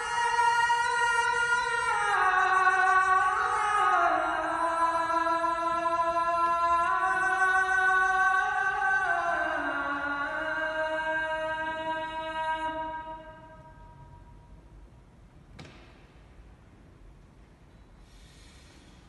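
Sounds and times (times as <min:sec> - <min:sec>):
person singing slow melody: 0:00.0 - 0:14.3.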